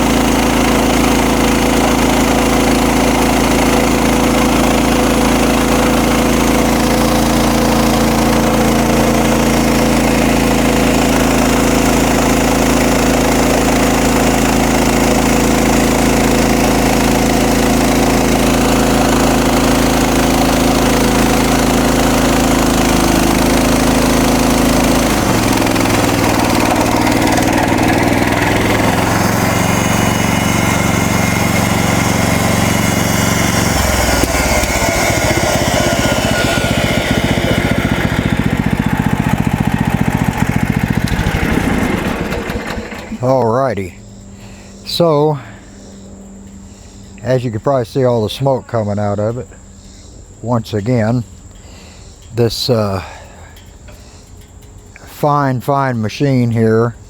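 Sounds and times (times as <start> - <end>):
saw blade cutting log: 0.0 - 43.3
sawmill engine running: 0.0 - 49.7, 50.4 - 57.0.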